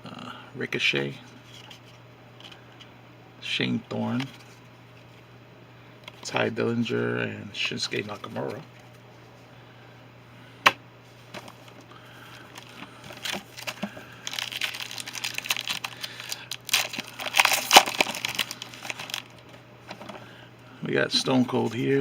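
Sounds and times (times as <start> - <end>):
wrapper tearing and crinkling: 12.4 - 19.4.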